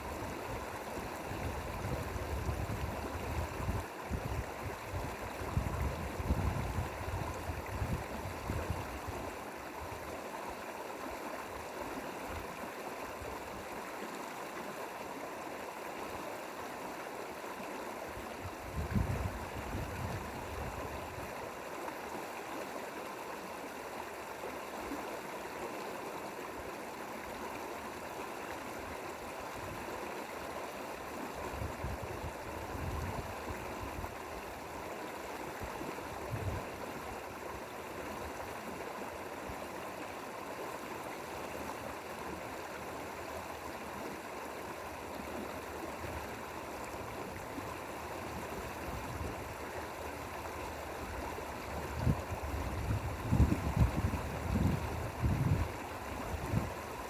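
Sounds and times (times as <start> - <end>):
stream water rushing: 0.0 - 57.0.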